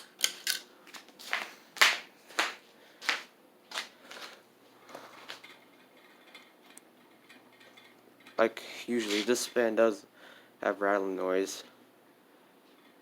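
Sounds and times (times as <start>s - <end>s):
ceiling fan clicks and taps: 5.2s - 8.5s.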